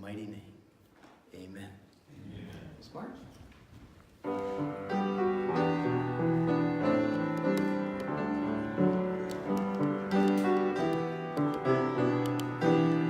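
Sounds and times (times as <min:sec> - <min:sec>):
piano playing slow chords: 0:04.2 - 0:13.0.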